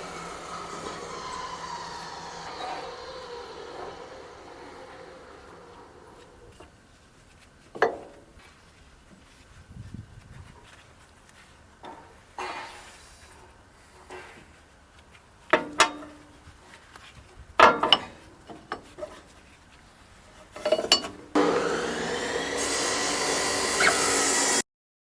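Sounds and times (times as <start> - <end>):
metal parts knocking and clinking: 17.6 - 18.9, 20.5 - 21.2.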